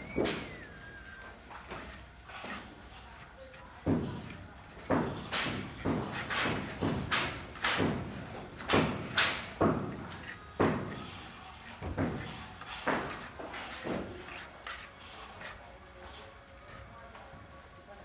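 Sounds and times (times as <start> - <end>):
hammering knocks: 0.0 - 1.9, 3.8 - 14.4.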